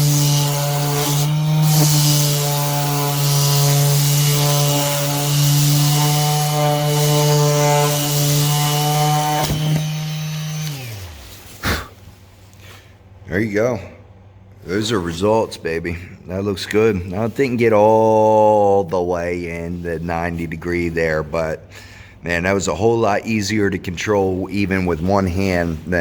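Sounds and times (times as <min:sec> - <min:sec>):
electric sander running: 0:00.0 - 0:11.6
sandpaper hissing on paint: 0:00.0 - 0:12.0.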